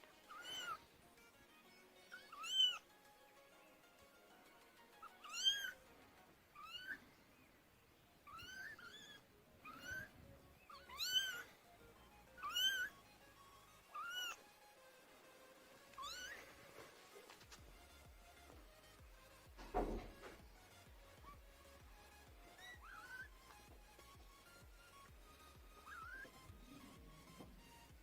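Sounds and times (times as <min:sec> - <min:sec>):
kitten mewing: 0:00.3 - 0:00.8, 0:02.2 - 0:02.8, 0:05.1 - 0:05.8, 0:06.6 - 0:07.0, 0:08.2 - 0:11.5, 0:12.4 - 0:12.9, 0:13.9 - 0:14.4, 0:16.0 - 0:16.5, 0:22.6 - 0:23.4, 0:25.7 - 0:27.2.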